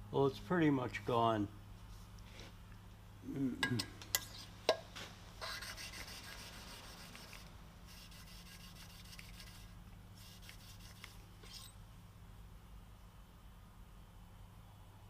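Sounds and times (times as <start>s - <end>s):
valve lapping gritty rubbing: 5.4s - 11.2s.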